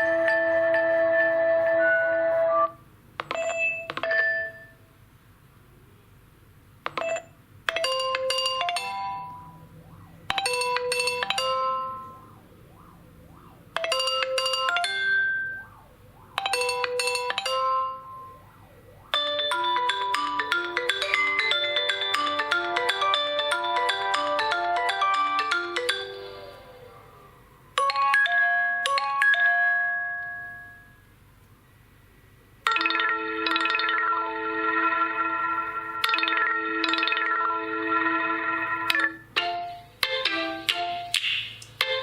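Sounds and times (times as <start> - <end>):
bell-like ringtone melody: 0.0 - 2.4, 3.3 - 4.8, 7.0 - 12.4, 13.8 - 27.1, 27.8 - 31.0, 32.7 - 41.1
ringtone of quick notes: 3.3 - 4.8, 6.9 - 9.6, 10.3 - 12.4, 13.8 - 15.7, 16.4 - 18.4, 19.1 - 26.6, 27.8 - 31.0, 32.7 - 41.1.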